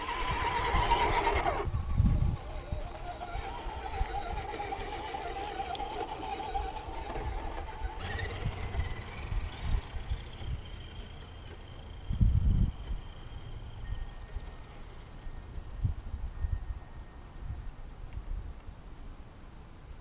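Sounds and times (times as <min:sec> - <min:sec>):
electric motor and gears whining: 0:00.0 - 0:15.8
wind rumble on microphone: 0:00.1 - 0:05.4, 0:06.0 - 0:11.2, 0:11.8 - 0:14.5, 0:15.4 - 0:18.9.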